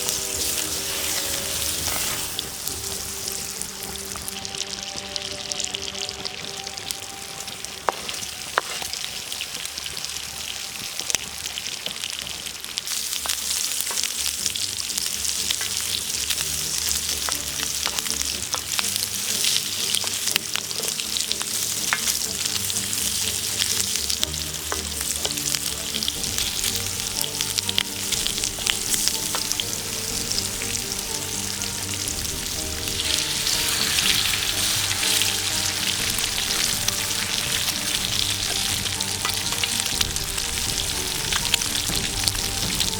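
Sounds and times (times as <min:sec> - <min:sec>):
campfire crackles: 0:00.0 - 0:42.9
food sizzling in a pan: 0:00.0 - 0:42.9
soft background music: 0:00.0 - 0:42.9.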